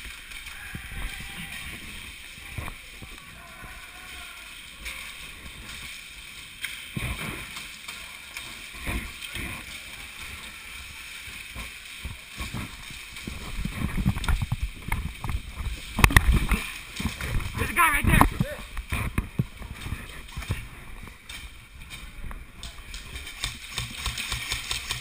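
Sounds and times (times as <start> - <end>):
rustling and low thumps: 11.5 - 25.0.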